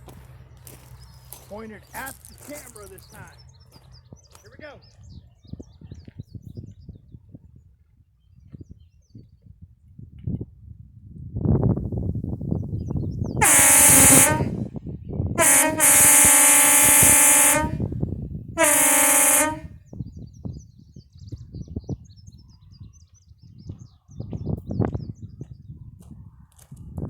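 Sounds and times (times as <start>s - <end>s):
air horn blasts: 13.4s - 14.7s, 15.4s - 17.9s, 18.6s - 19.7s.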